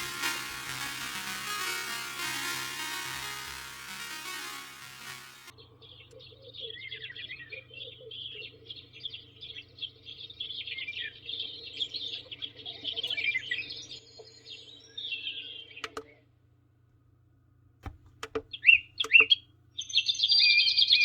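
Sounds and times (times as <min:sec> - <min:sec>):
recorded birdsong chirps and trills: 0:05.6 - 0:16.1.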